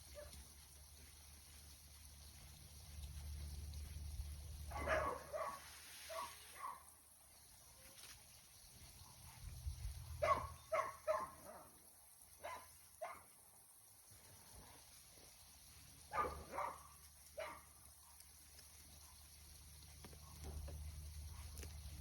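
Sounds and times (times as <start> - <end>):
dog barking: 4.7 - 6.9, 10.2 - 11.8, 12.4 - 13.3, 16.1 - 18.2.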